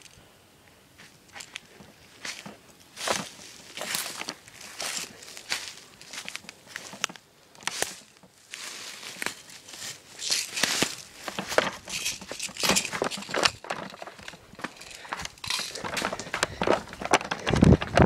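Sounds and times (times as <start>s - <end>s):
rustling of dry leaves: 1.0s - 18.0s.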